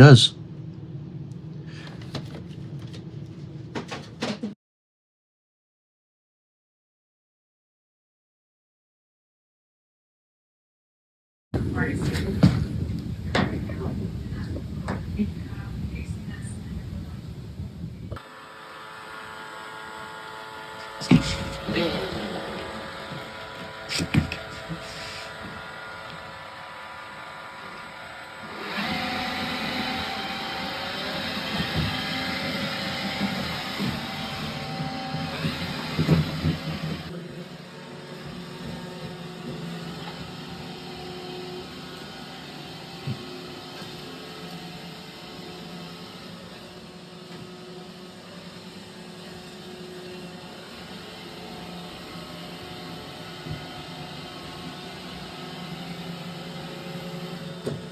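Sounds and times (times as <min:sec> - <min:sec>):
robot vacuum whirring: 0:18.1 - 0:57.9.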